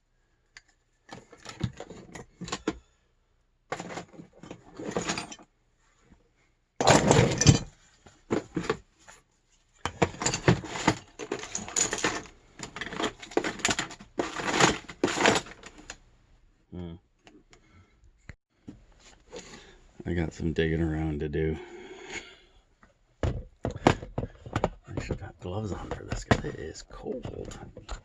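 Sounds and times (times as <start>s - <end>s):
metal tools clattering in toolbox: 3.7s - 5.5s, 6.8s - 8.8s, 9.8s - 15.9s.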